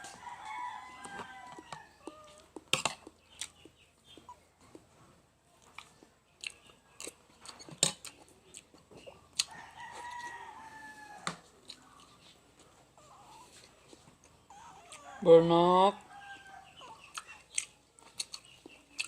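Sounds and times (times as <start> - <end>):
rooster crowing: 0.0 - 2.4, 9.5 - 11.4
chewing on chicken bones: 0.0 - 4.9, 5.6 - 15.2, 16.1 - 19.0.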